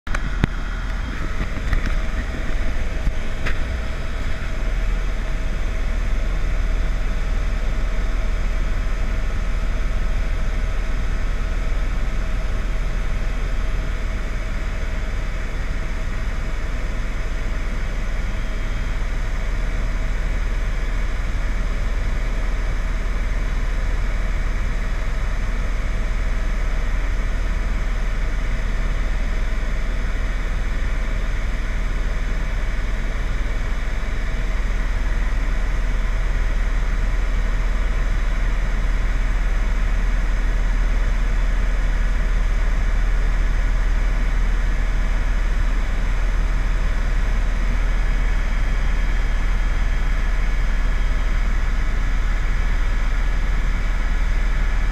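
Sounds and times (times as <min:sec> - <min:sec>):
vehicle engine rumbling: 0:00.1 - 0:10.3.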